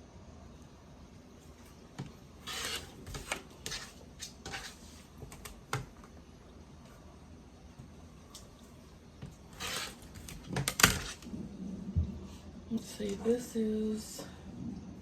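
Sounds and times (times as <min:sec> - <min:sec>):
rotary cutter swishing: 0:02.4 - 0:04.8.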